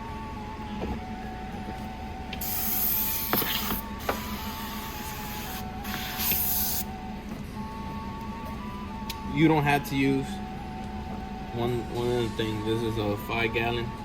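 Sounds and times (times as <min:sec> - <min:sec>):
pump sprayer hissing: 0:02.4 - 0:06.9.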